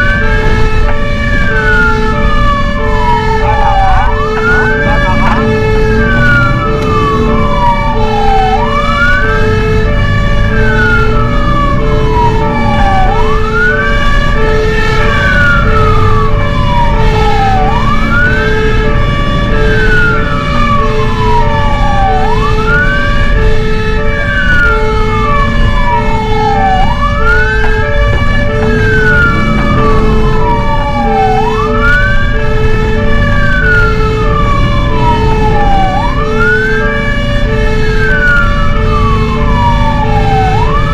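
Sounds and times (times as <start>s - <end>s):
fire engine siren wailing: 0.0s - 40.9s
truck engine rumble: 0.0s - 40.9s.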